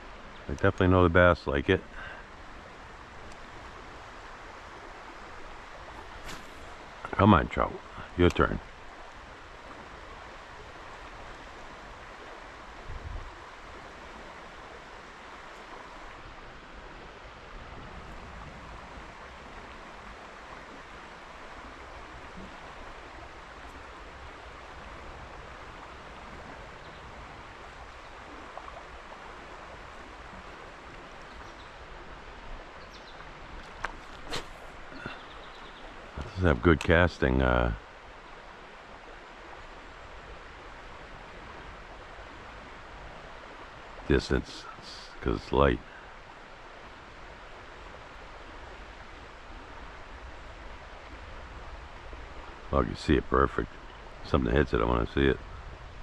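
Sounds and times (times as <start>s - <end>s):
river water rushing: 0.0s - 52.8s
low thump: 6.2s - 6.8s.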